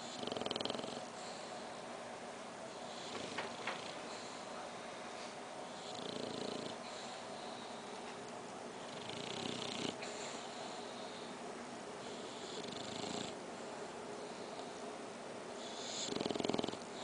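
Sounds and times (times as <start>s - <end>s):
puppy snoring: 0.0s - 1.7s, 2.7s - 4.7s, 5.6s - 7.8s, 8.7s - 11.4s, 12.0s - 13.4s, 15.6s - 17.0s.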